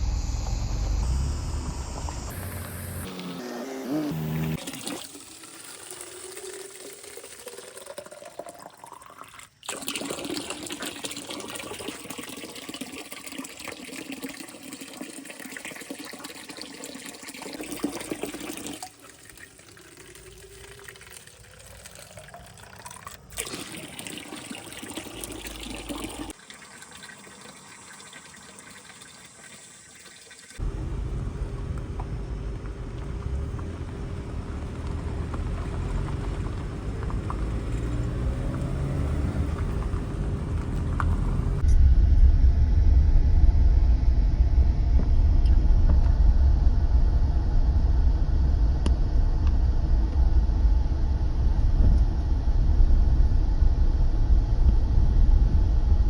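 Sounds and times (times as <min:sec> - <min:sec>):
low steady rumble: 0:00.0 - 0:03.1, 0:30.6 - 0:56.0
water rushing: 0:00.7 - 0:41.6.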